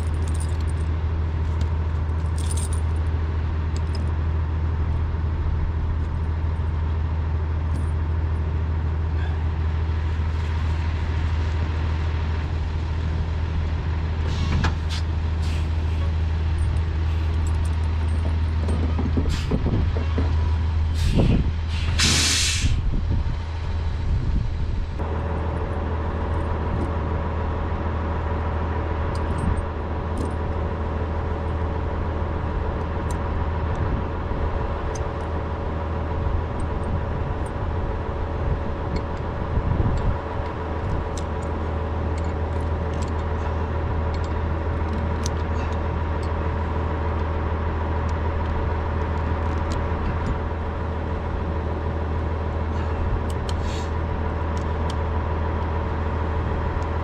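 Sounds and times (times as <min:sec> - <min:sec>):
truck engine idling: 0:00.0 - 0:57.0
loud air hiss: 0:20.9 - 0:22.9, 0:53.6 - 0:54.0.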